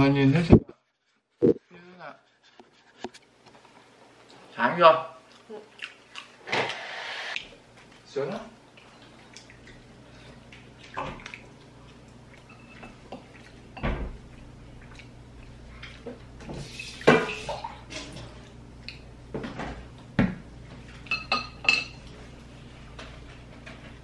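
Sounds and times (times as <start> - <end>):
dishes and cutlery clinking: 21.0 - 22.1.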